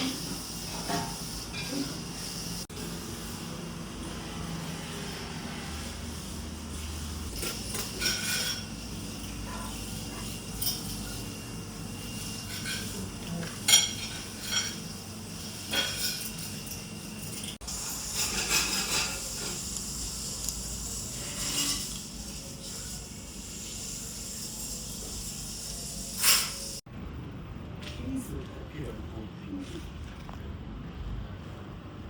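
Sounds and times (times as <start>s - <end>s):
dishes and cutlery clinking: 0.0s - 2.1s, 7.3s - 11.4s, 12.1s - 19.6s, 21.2s - 22.1s.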